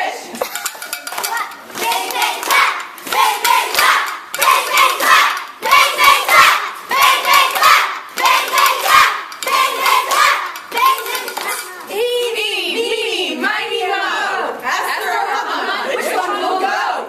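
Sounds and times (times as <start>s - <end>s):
hand clapping: 0.4s - 11.9s
children chanting: 1.2s - 17.0s.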